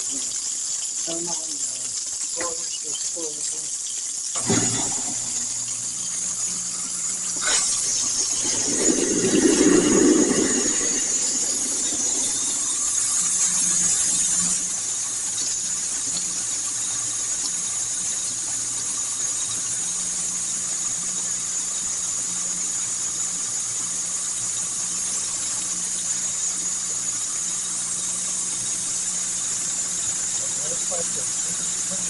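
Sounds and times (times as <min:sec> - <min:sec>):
tap water pouring: 0:00.0 - 0:20.5
garbage disposal motor hum: 0:00.0 - 0:32.0.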